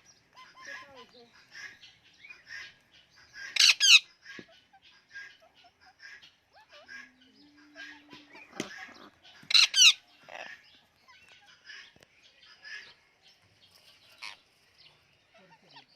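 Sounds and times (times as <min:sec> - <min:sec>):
birds short repeated calls: 0:00.0 - 0:15.9
bird harsh squawk: 0:00.3 - 0:11.9.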